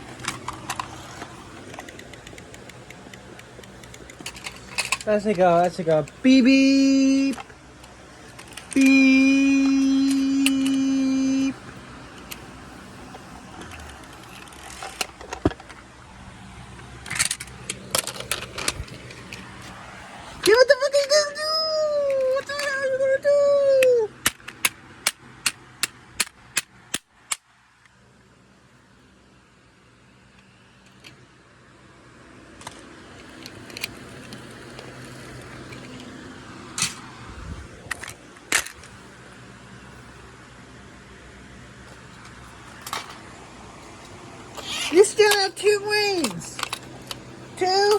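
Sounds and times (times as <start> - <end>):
sharp clicks and rattles: 0.0 - 21.2, 24.2 - 28.0, 32.5 - 39.1, 41.8 - 47.9
car engine humming: 0.0 - 26.9, 27.8 - 47.9.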